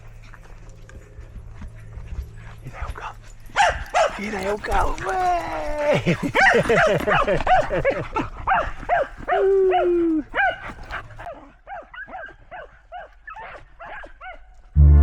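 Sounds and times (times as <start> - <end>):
dog barking excitedly: 2.7 - 14.5
music: 14.8 - 15.0.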